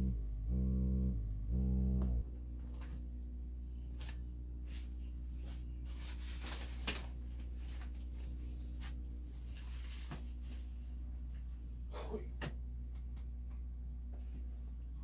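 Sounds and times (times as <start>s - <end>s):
steady low hum: 0.0s - 15.0s
clicks and rustles of handling: 4.0s - 11.7s.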